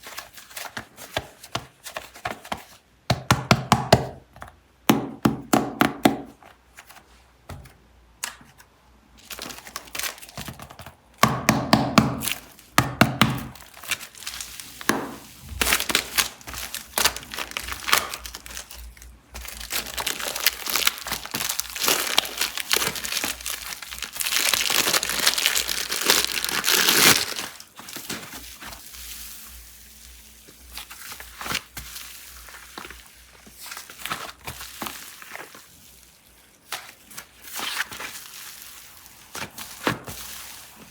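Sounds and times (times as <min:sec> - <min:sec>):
packaging crinkling and tearing: 0:09.2 - 0:10.9, 0:13.4 - 0:40.9.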